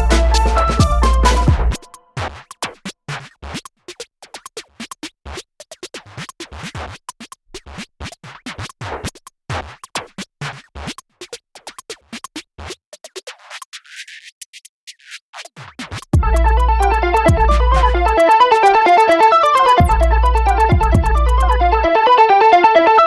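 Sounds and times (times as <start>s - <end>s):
electronic music with stuttering hits: 0.0s - 2.5s, 15.4s - 22.3s.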